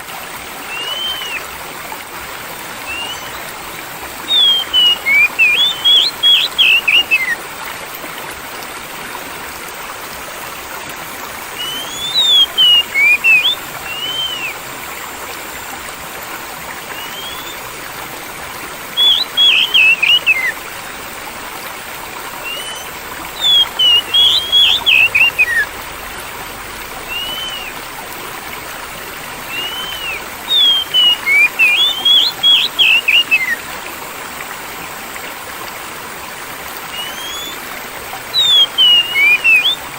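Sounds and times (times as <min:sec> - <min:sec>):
flowing water: 0:00.0 - 0:39.9
bird singing whistled notes: 0:00.7 - 0:01.4, 0:02.8 - 0:03.5, 0:04.2 - 0:07.4, 0:11.6 - 0:14.6, 0:16.9 - 0:17.6, 0:18.9 - 0:20.6, 0:22.4 - 0:25.7, 0:27.1 - 0:27.8, 0:29.4 - 0:33.6, 0:36.9 - 0:37.6, 0:38.3 - 0:39.9.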